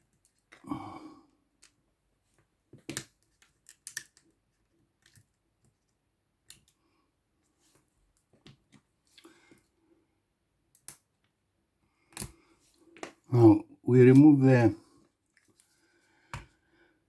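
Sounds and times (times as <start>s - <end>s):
small tools clicking and tapping: 2.8s - 4.4s.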